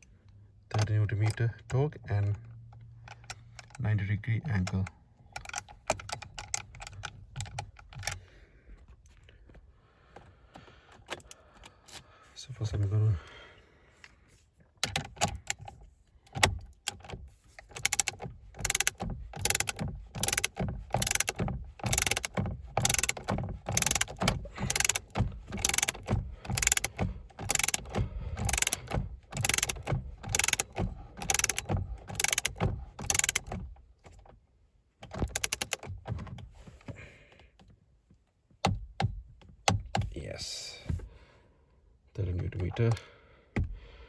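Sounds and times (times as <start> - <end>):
ratchet wrench clicking: 16.3 - 33.5, 35.1 - 35.8.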